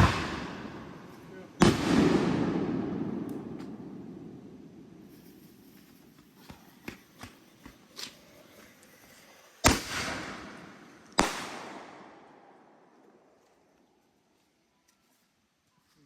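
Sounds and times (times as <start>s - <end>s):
loud firework bangs with echo: 0.0s - 5.0s, 9.6s - 12.5s
fireworks popping: 0.0s - 12.3s.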